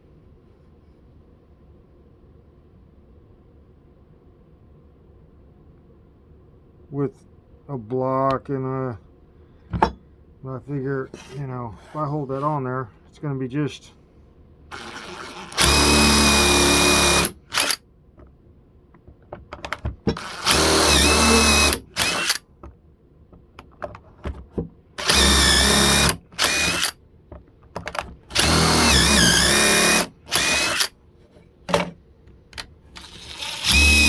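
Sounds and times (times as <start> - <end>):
electric drill boring wood: 14.7 - 17.8, 20.2 - 22.4, 25.0 - 26.9, 28.3 - 30.9, 33.0 - 34.0.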